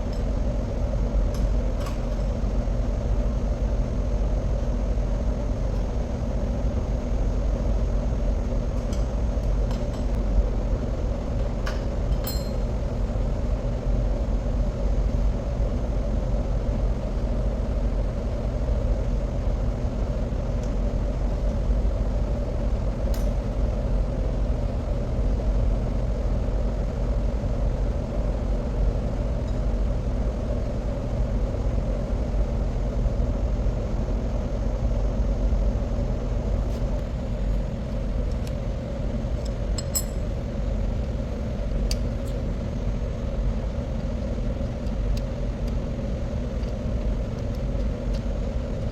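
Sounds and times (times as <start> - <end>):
light metal clicks: 39.4 - 40.4.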